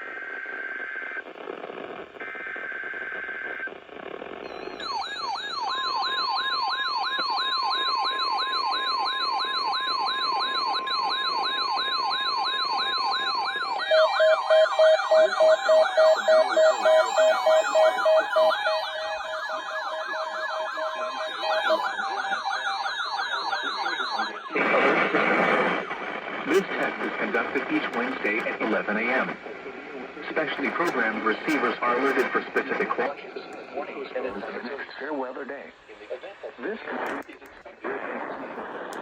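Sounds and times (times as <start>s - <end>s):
siren-like warbling alarm: 4.5s - 26.7s.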